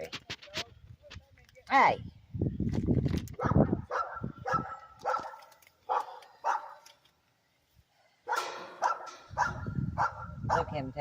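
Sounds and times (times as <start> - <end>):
dog barking: 3.4 - 6.9, 8.3 - 10.8.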